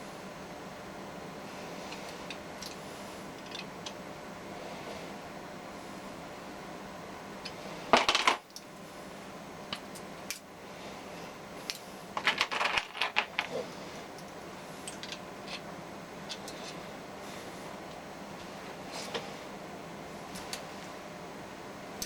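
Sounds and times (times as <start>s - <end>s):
steady low hum: 0.0s - 22.0s
metal parts clinking and rattling: 12.2s - 13.5s.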